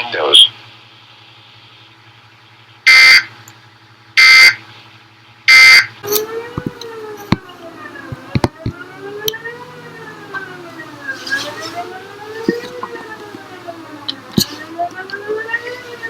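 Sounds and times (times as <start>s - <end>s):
warning siren wailing: 2.9s - 3.4s, 4.2s - 4.6s, 5.5s - 16.0s.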